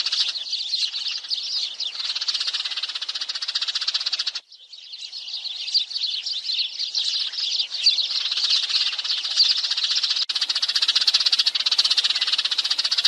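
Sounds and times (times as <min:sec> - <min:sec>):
sparrows chirping: 0:00.0 - 0:13.0.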